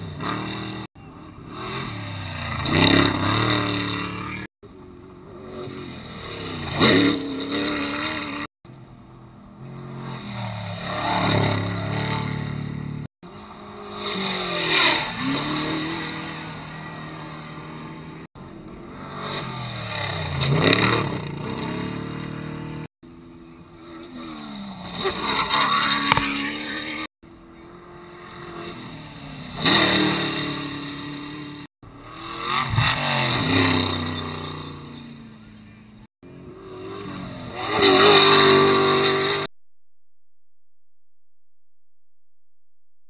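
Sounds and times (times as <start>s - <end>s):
race trucks revving past: 0.0s - 4.5s, 9.6s - 22.9s, 23.7s - 35.6s, 36.3s - 39.5s.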